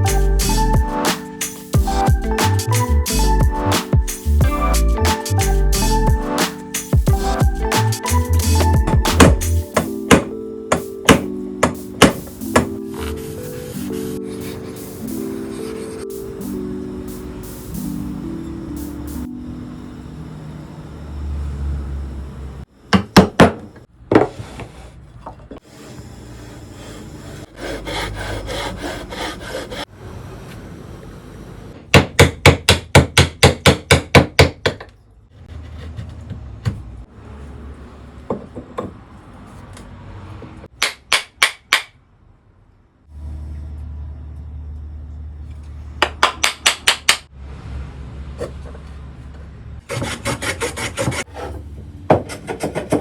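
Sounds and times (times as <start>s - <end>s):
scraping on wood: 49.9s - 53.0s.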